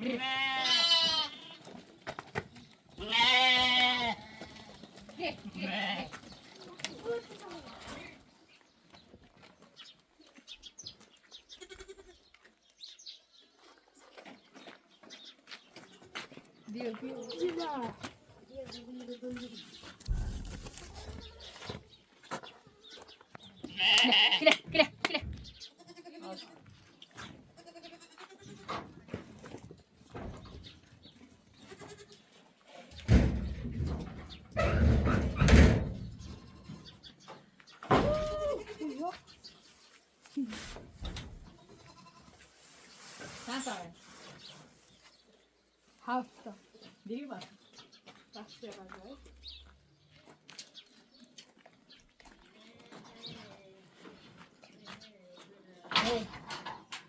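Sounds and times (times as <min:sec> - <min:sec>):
goats and sheep bleating: 0:00.0 - 0:01.9, 0:03.0 - 0:06.4, 0:11.4 - 0:12.4, 0:23.6 - 0:24.7, 0:25.7 - 0:26.6, 0:27.2 - 0:28.8, 0:31.5 - 0:32.5, 0:38.0 - 0:39.2, 0:41.5 - 0:42.5.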